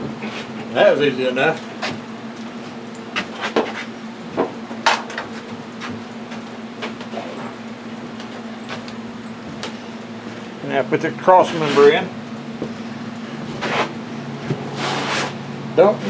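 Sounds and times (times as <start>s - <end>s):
steady low hum: 0.0s - 16.0s
metal tools clinking: 7.2s - 11.1s.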